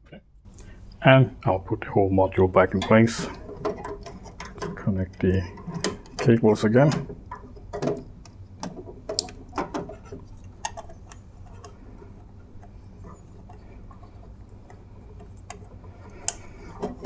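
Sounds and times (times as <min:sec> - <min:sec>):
light clicks and taps: 0:12.6 - 0:17.0.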